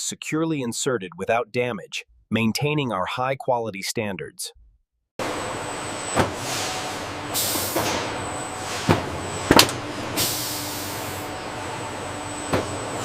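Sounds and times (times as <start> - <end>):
compressed air hiss: 7.4 - 7.9, 10.2 - 11.3.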